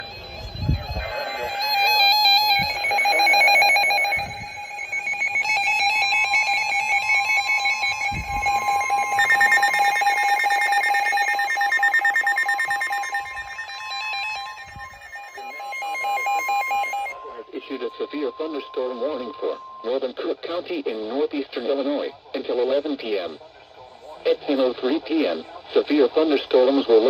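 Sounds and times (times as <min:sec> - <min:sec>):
pulsing alert beeps: 0:00.0 - 0:20.1
steady warning alarm tone: 0:00.0 - 0:21.3.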